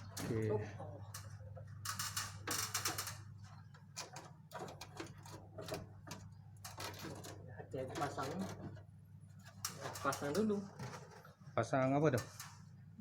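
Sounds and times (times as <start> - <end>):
plastic parts clicking and scraping: 1.2 - 11.3.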